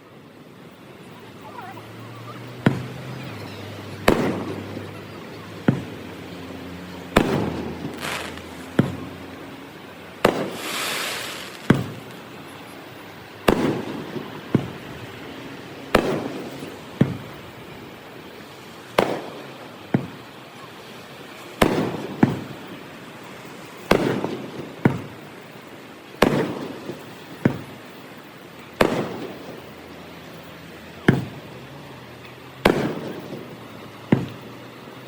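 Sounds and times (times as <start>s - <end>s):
hissing crackle of fireworks: 0.0s - 35.0s
firework shells booming: 2.6s - 6.3s, 6.9s - 20.8s, 21.5s - 25.4s, 26.1s - 28.0s, 28.6s - 30.4s, 31.0s - 31.5s, 32.6s - 34.9s.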